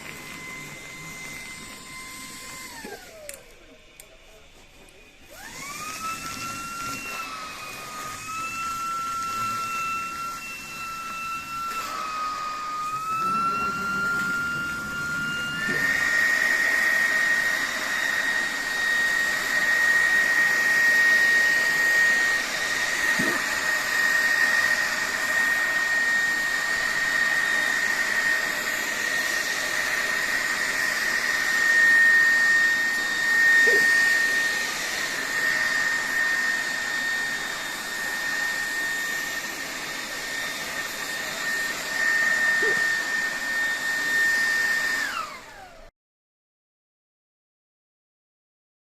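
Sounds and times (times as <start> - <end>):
vacuum cleaner motor whine: 0.0 - 45.9.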